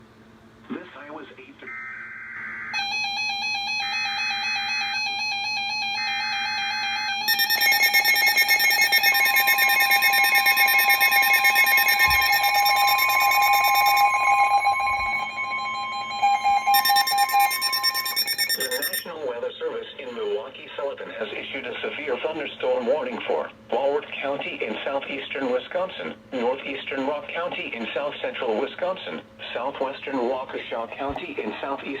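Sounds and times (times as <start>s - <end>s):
loud two-pitch attention tone: 7.2s - 19.1s
screeching data bursts: 7.2s - 19.1s
steady tone: 7.2s - 19.1s.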